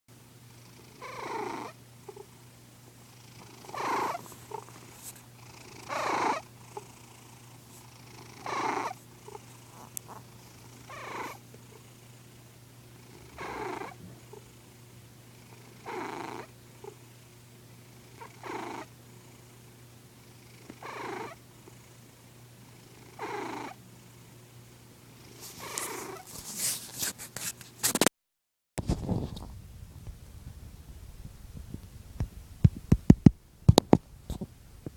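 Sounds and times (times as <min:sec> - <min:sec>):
cat snoring: 0:00.5 - 0:02.4, 0:03.1 - 0:12.2, 0:13.0 - 0:14.6, 0:15.3 - 0:17.1, 0:17.9 - 0:22.0, 0:22.6 - 0:23.8, 0:25.2 - 0:26.3.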